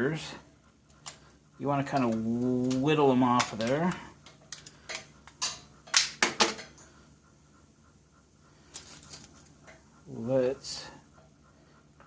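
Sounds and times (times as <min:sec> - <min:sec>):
faint handling sounds: 0:08.5 - 0:11.4.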